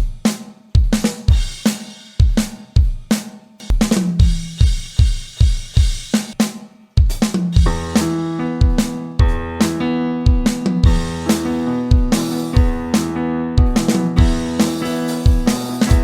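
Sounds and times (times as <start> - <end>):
hi-hat and cymbals ringing: 0.0 - 8.2, 14.2 - 16.0
kick drum and snare beat: 0.0 - 16.0.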